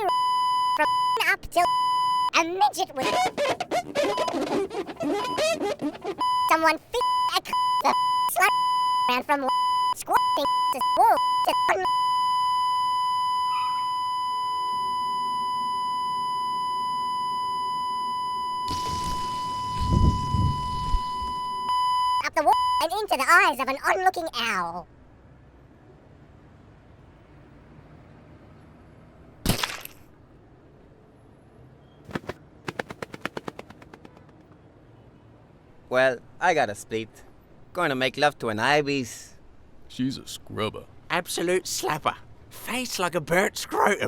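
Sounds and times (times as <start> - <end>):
censor bleep tone: 6.3 - 22.8.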